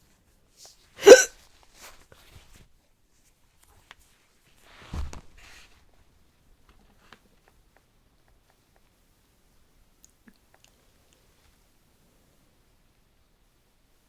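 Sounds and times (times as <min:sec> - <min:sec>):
woman hiccuping softly: 0:01.0 - 0:01.3.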